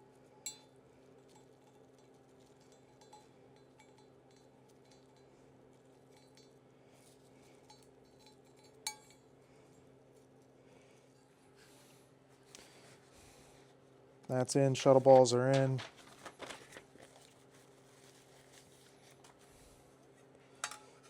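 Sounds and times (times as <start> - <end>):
steady low hum: 0.0 - 15.9.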